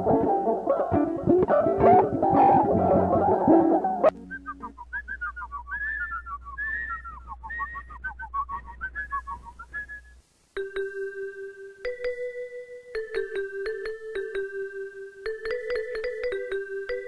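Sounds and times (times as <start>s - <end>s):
plucked guitar chord: 0.0s - 4.6s
bird-like warbling whistle: 2.4s - 10.2s.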